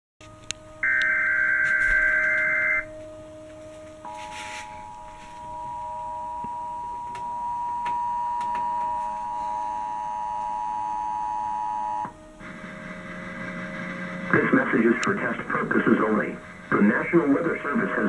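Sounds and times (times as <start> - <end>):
two-tone alert signal: 0.8 - 2.9, 4.0 - 12.1.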